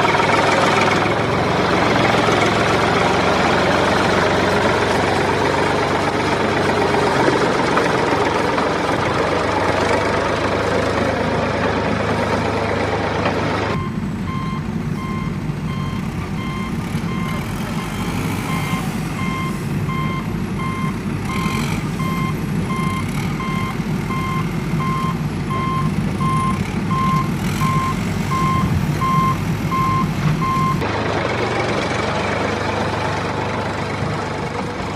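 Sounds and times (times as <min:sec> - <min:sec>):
diesel engine running: 0:00.0 - 0:34.9
reversing alarm beeping: 0:13.8 - 0:30.8.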